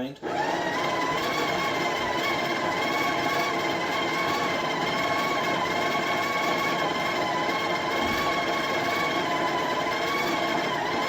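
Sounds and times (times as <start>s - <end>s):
coffee grinder motor whine: 0.2s - 11.0s.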